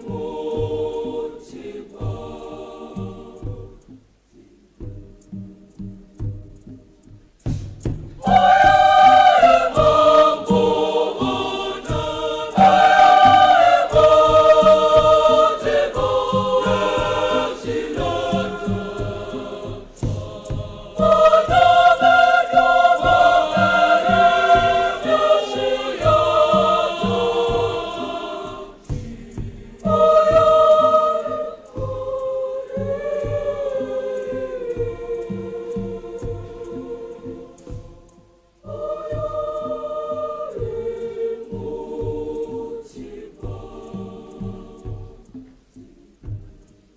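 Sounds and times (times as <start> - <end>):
girls' choir singing: 0.0 - 5.8, 8.2 - 46.3
steady low beat: 0.0 - 46.9.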